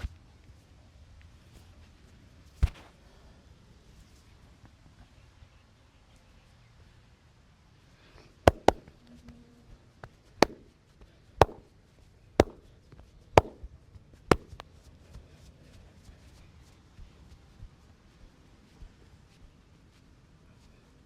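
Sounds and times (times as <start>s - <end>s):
hands smacking body: 2.6s - 2.9s, 8.5s - 8.8s, 10.4s - 10.6s, 11.4s - 11.6s, 12.4s - 12.6s, 13.4s - 13.6s, 14.3s - 14.6s.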